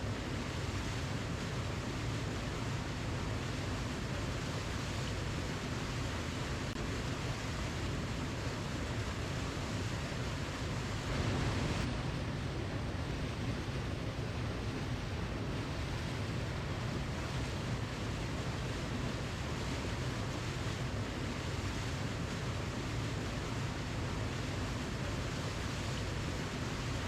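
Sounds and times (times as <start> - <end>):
waterfall roaring: 0.1 - 27.0.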